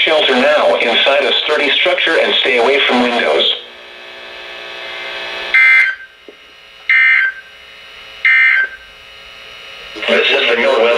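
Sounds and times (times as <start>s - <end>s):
faint radio hum: 0.0s - 5.5s, 9.5s - 10.9s.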